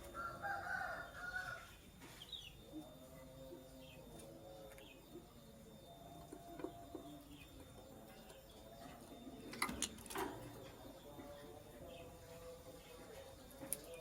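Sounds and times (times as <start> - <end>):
dove-like cooing: 0.0 - 1.7.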